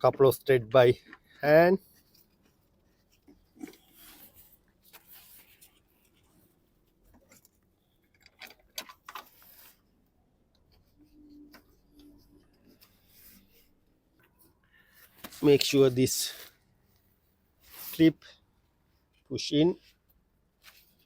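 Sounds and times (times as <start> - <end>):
hands fitting car parts: 7.1 - 9.5.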